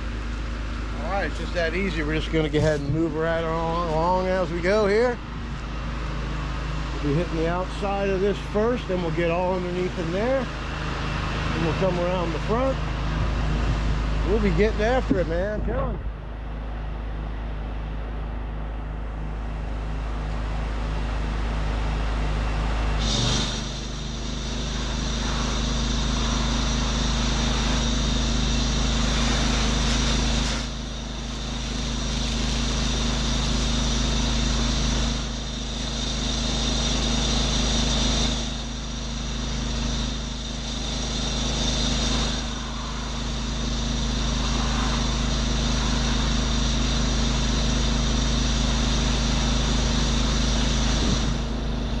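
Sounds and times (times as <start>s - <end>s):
pressure washer engine running: 0.0s - 52.0s
high-pressure spray hissing: 23.0s - 52.0s.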